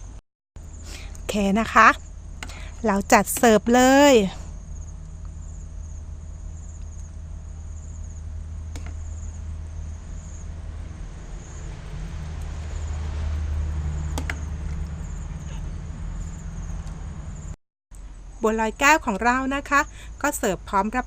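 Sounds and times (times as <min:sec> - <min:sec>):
steady low hum: 0:00.0 - 0:21.0
insects chirping: 0:00.6 - 0:21.0
sharp clicks: 0:02.4 - 0:02.6, 0:08.7 - 0:09.0, 0:14.1 - 0:14.8.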